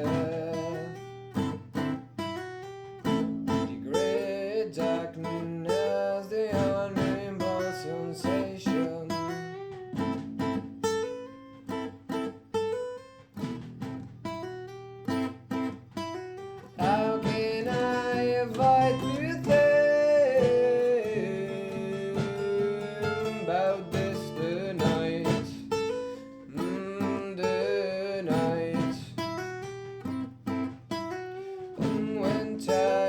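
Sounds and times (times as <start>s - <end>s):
plucked acoustic guitars: 0.0s - 33.0s.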